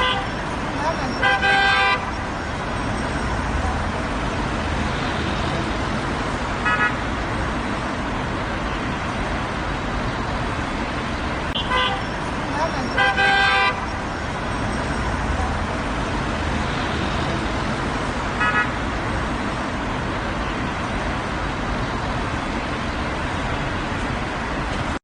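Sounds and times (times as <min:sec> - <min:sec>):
car horn honking: 0:00.0 - 0:00.4, 0:01.1 - 0:02.2, 0:06.6 - 0:07.0, 0:11.6 - 0:12.1, 0:12.8 - 0:14.0, 0:18.4 - 0:18.8
road traffic rumble: 0:00.0 - 0:25.0.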